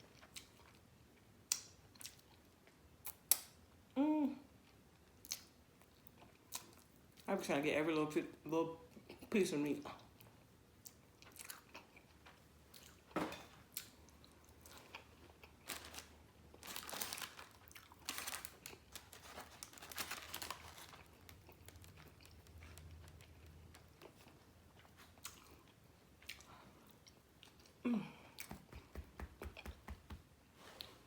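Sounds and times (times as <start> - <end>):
chewing and crunching food: 0.0 - 3.6, 4.5 - 7.3, 8.8 - 28.9.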